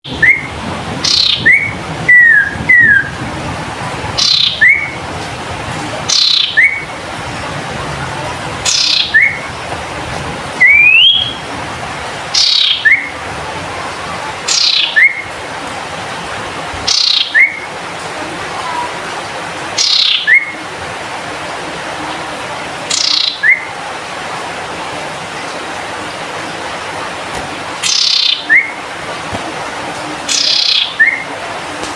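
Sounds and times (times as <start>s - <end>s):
bird singing: 0.0s - 3.2s, 4.2s - 5.0s, 6.1s - 6.9s, 8.6s - 9.6s, 10.6s - 11.6s, 12.3s - 13.3s, 14.5s - 15.4s, 16.9s - 17.7s, 19.8s - 20.6s, 22.9s - 23.7s, 27.8s - 28.8s, 30.0s - 31.4s.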